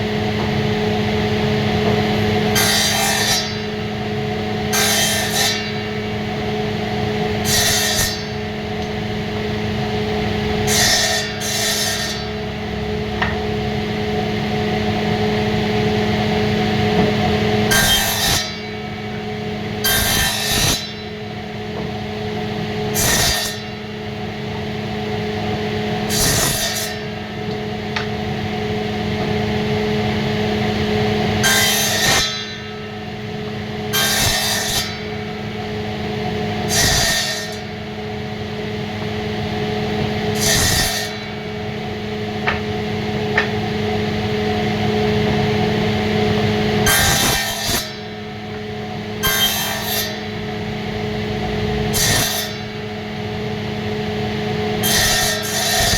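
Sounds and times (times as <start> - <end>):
woodworking machine motor humming: 0.0 - 5.0, 24.2 - 32.0, 41.2 - 47.2.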